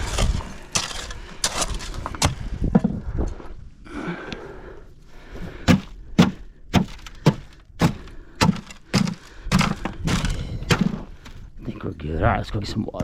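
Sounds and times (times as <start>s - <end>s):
sharp heavy thuds: 5.6s - 11.3s.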